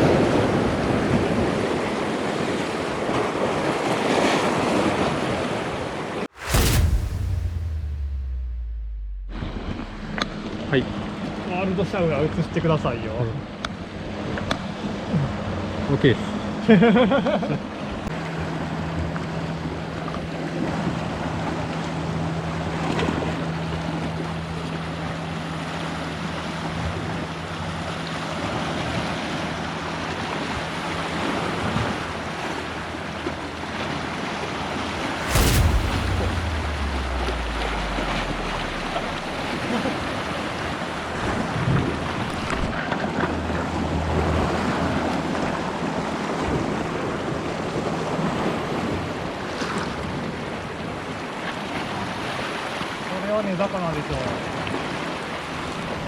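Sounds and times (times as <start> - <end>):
sharp knock: 6.4 - 10.7, 35.2 - 40.2
sea waves washing on rocks: 35.1 - 42.6
faint low hum: 35.2 - 42.6.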